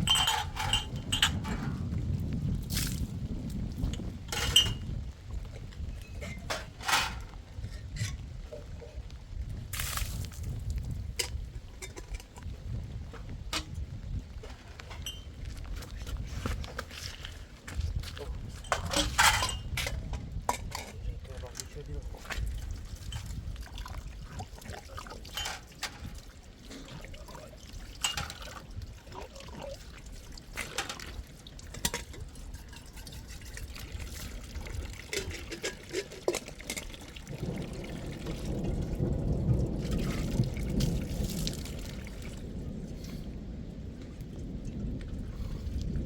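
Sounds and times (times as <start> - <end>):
water trickling and pouring: 0.0 - 8.2, 9.6 - 12.8, 20.5 - 43.1.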